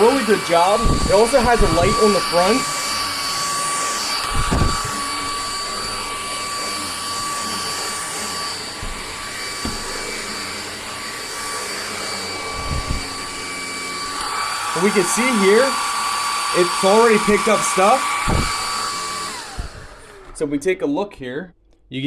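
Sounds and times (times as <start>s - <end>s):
stick vacuum motor whine: 0.0s - 20.7s
brief low knocks: 0.8s - 3.3s, 4.2s - 7.4s, 8.8s - 10.5s, 18.2s - 20.4s.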